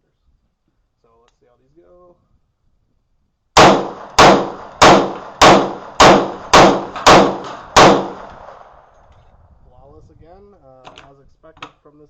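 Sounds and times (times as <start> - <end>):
pistol shots: 3.6 - 8.9.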